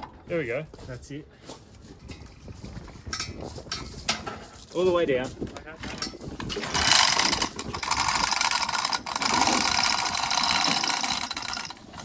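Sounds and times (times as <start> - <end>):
rapid mechanical clicking: 6.5 - 12.0.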